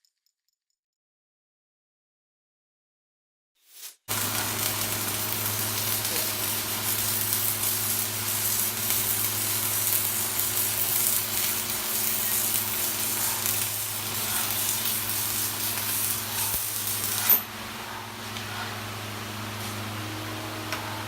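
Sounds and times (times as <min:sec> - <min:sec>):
welding arc crackling: 0:03.6 - 0:18.4.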